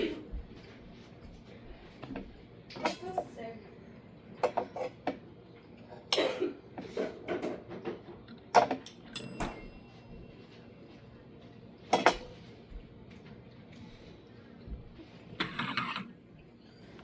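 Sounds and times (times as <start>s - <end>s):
dishes and cutlery clinking: 6.0s - 10.6s, 11.8s - 12.5s
high metallic ring: 9.1s - 10.8s.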